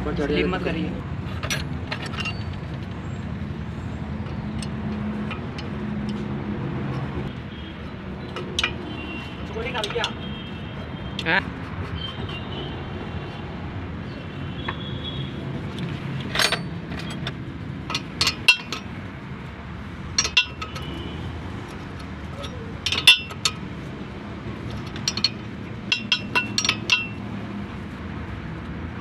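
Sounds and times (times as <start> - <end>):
metal tools clinking and knocking: 1.3 - 3.0, 8.3 - 10.4, 15.7 - 19.0, 20.0 - 23.7, 24.6 - 27.3.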